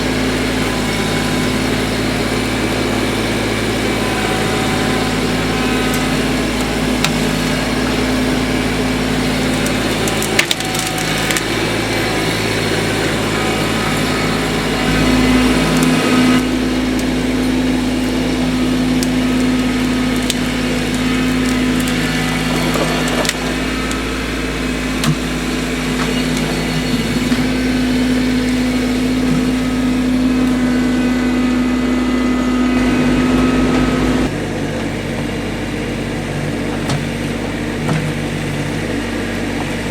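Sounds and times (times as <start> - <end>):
wood cracking and splintering: 0.0 - 30.9
engine running steadily: 0.0 - 39.9.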